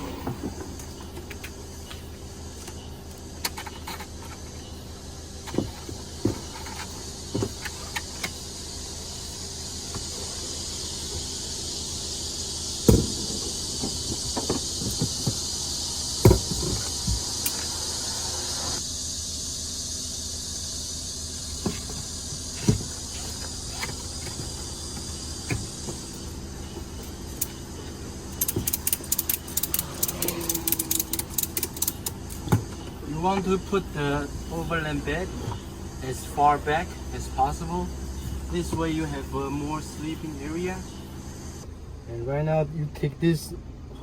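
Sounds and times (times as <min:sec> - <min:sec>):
steady hiss: 0:00.0 - 0:41.7
low hum: 0:00.0 - 0:42.1
metallic clicks of strap hooks: 0:28.4 - 0:32.4.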